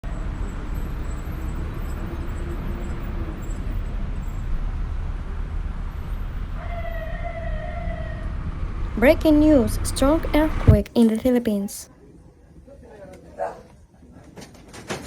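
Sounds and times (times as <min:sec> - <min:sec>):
road traffic rumble: 0:00.0 - 0:11.9.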